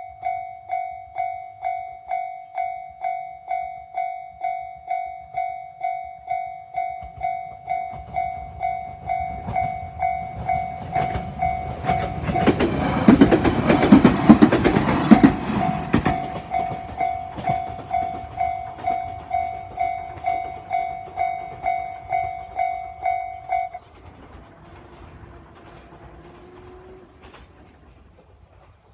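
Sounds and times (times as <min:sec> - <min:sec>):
level-crossing warning bell ringing: 0:00.0 - 0:27.6
train wheels clacking over rail joints: 0:06.8 - 0:28.9.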